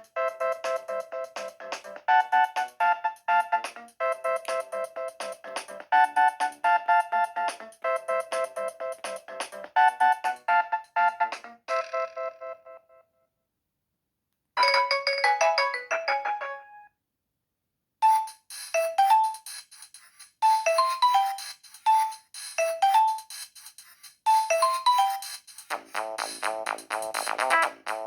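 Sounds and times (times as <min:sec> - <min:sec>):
phone ringtone melodies: 0:02.1 - 0:09.2, 0:09.8 - 0:12.8, 0:14.6 - 0:16.9, 0:18.0 - 0:19.4, 0:20.4 - 0:23.3, 0:24.3 - 0:25.4.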